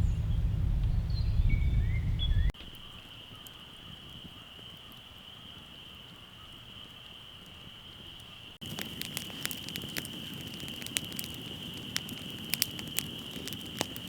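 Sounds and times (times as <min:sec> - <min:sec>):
low rumbling noise: 0:00.0 - 0:02.6
bird chirps: 0:00.0 - 0:03.6.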